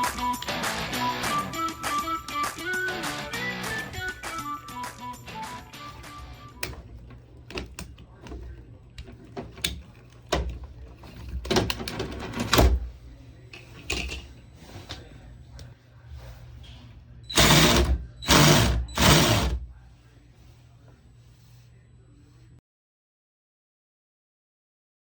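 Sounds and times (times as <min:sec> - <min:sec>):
small electric motor running: 0:17.4 - 0:19.6.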